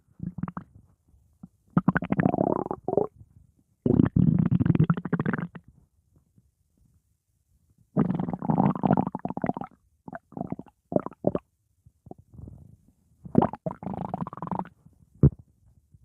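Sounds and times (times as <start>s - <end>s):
stomach gurgling: 0.2s - 0.8s, 1.8s - 3.2s, 3.8s - 5.7s, 8.0s - 11.4s, 12.0s - 15.5s.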